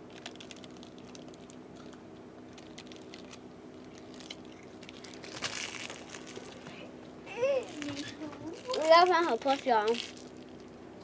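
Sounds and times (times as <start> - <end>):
small clicks and crackles: 0.0 - 6.8, 7.6 - 10.8
steady low hum: 0.0 - 11.0.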